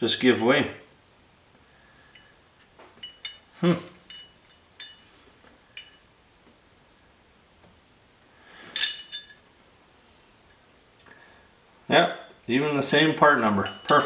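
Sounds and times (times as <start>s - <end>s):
metal parts clinking: 3.0s - 5.1s, 8.7s - 9.5s.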